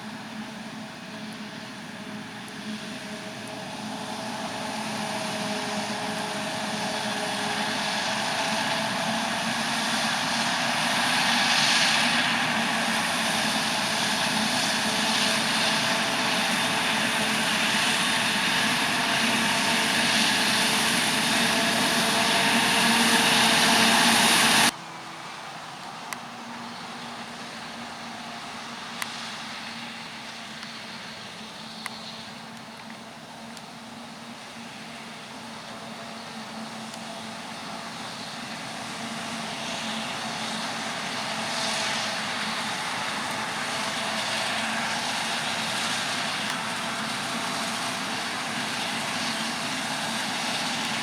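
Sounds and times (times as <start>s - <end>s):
quieter machine running: 0.0s - 24.7s
diesel engine whining: 0.0s - 51.0s.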